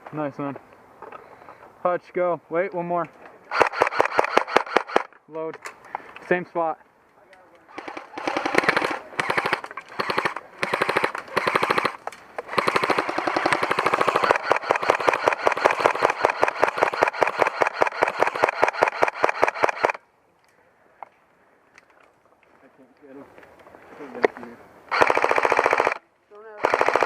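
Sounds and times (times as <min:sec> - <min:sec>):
airsoft gun firing bursts: 0:03.5 - 0:05.1, 0:07.7 - 0:20.0, 0:24.9 - 0:26.0, 0:26.6 - 0:27.0.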